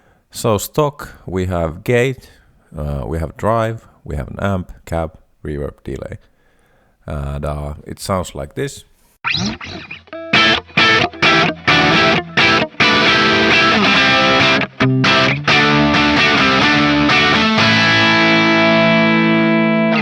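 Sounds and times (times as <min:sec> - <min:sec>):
distorted electric guitar chords: 0:09.2 - 0:20.0.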